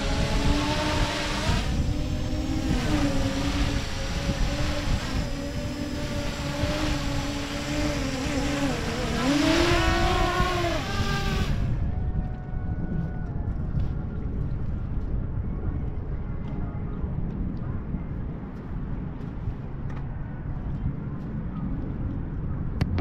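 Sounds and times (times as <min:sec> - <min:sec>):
drone propellers whining: 0:00.0 - 0:13.7
wind rumble on microphone: 0:00.0 - 0:23.0.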